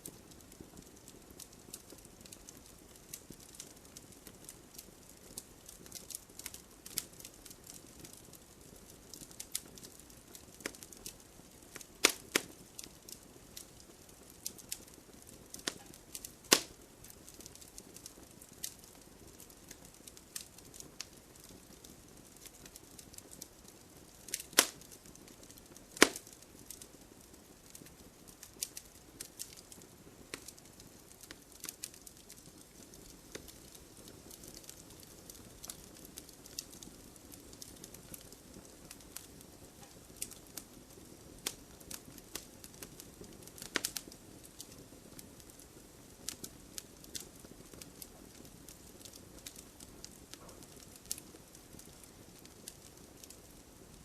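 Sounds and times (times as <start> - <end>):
faint low hiss: 0.0 - 54.0
wood fire crackling: 0.0 - 54.0.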